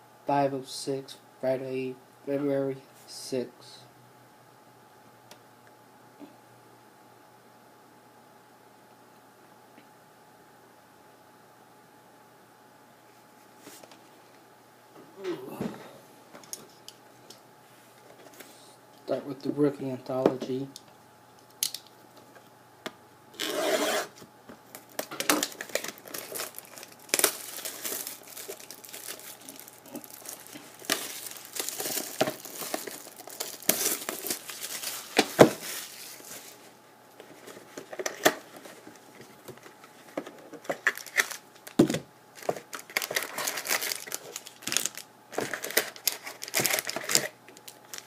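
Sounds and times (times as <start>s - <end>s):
packaging tearing and crinkling: 24.7s - 36.6s, 40.6s - 48.0s.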